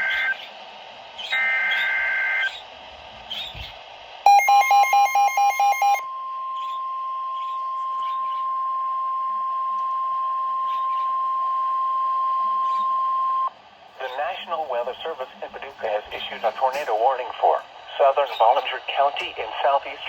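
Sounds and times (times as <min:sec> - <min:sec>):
steady warning alarm tone: 0:01.3 - 0:02.6, 0:04.3 - 0:13.5.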